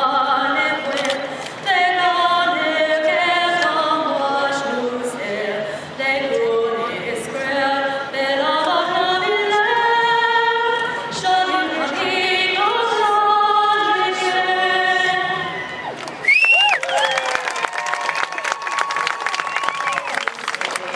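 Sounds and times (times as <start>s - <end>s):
woman singing unaccompanied: 0.0s - 15.6s.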